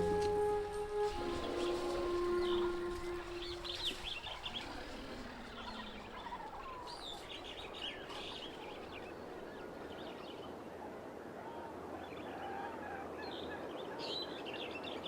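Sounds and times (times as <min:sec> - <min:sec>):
faint outdoor background: 0:00.0 - 0:15.0
small birds chirping: 0:01.1 - 0:10.1.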